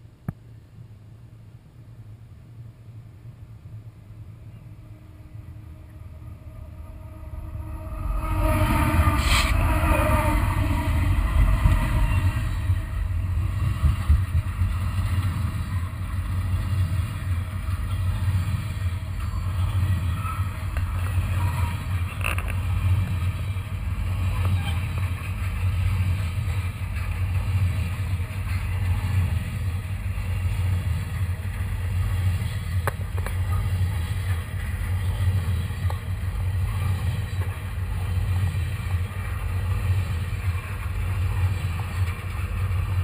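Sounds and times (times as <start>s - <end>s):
train rumbling: 2.1s - 43.0s
train horn note: 4.2s - 26.1s.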